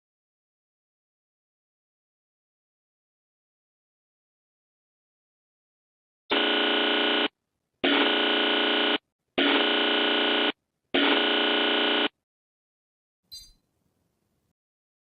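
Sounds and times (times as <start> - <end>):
harsh alert buzzer blasts: 6.3 - 12.2.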